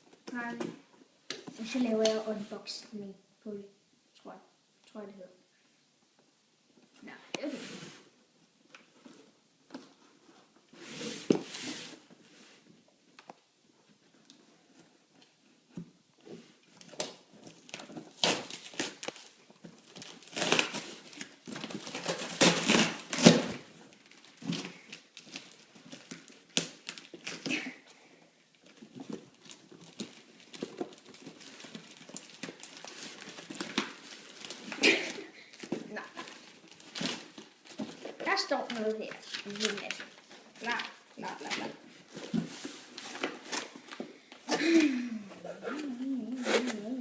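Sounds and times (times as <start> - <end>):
packaging crinkling and tearing: 16.8 - 27.6, 28.6 - 44.0.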